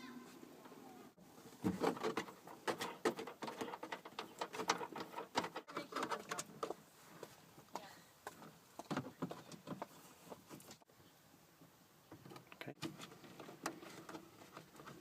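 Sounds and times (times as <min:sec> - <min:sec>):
clicks and rattles of plastic fasteners: 0:01.7 - 0:06.8.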